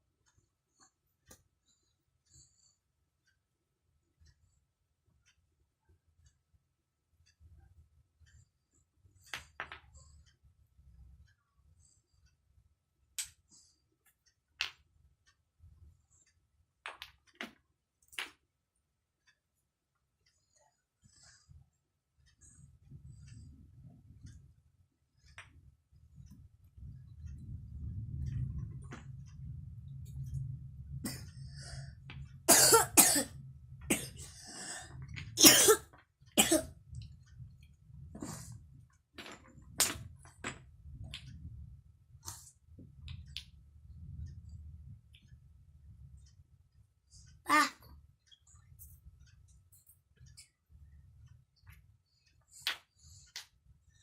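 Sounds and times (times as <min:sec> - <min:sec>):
wooden blocks clacking: 0:16.9 - 0:18.4
low hum: 0:20.3 - 0:52.2
child coughing: 0:32.5 - 0:33.3, 0:33.9 - 0:34.4, 0:35.4 - 0:36.7, 0:47.5 - 0:47.8.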